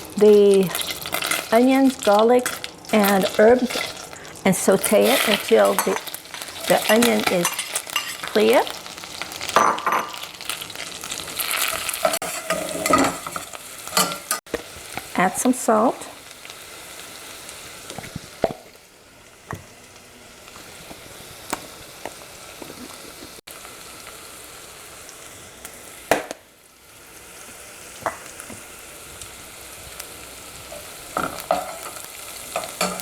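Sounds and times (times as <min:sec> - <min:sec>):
food sizzling in a pan: 0:00.0 - 0:33.0
utensil stirring against pan: 0:00.7 - 0:04.1, 0:11.5 - 0:14.4.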